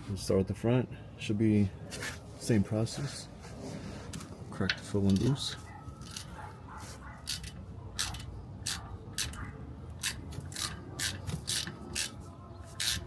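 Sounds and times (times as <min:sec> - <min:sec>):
ratchet wrench clicking: 0:07.2 - 0:09.4, 0:10.0 - 0:12.2, 0:12.8 - 0:13.0.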